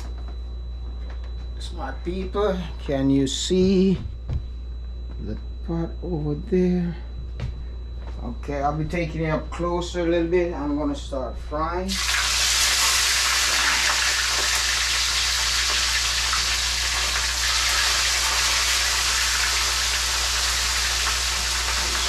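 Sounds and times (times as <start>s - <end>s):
fish sizzling in hot oil: 11.9s - 22.0s.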